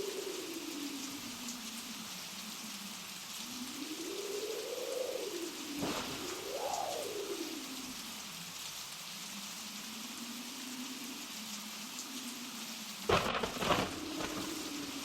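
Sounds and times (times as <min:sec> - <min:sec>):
blizzard wind howling: 0:00.0 - 0:15.0
sudden loud knocks: 0:13.1 - 0:14.6.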